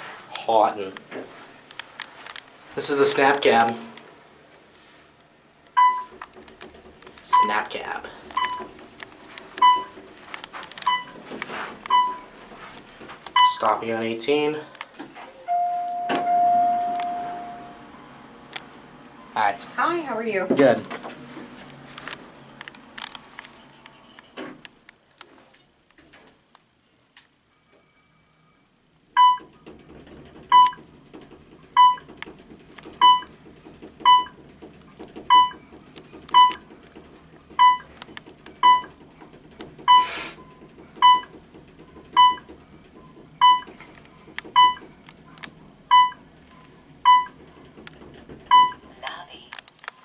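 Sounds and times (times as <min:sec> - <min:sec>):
elevator floor beeps: 0:05.8 - 0:06.2, 0:07.3 - 0:07.7, 0:08.3 - 0:08.8, 0:09.6 - 0:10.0, 0:10.8 - 0:11.2, 0:11.9 - 0:12.3, 0:13.3 - 0:13.6, 0:15.4 - 0:18.0, 0:27.5 - 0:29.6, 0:30.5 - 0:30.9, 0:31.8 - 0:32.1, 0:33.0 - 0:33.4, 0:34.0 - 0:34.4, 0:35.3 - 0:37.0, 0:37.6 - 0:39.0, 0:39.8 - 0:45.2, 0:45.9 - 0:47.9, 0:48.5 - 0:48.8
elevator hum: 0:15.2 - 0:24.1, 0:27.6 - 0:49.0.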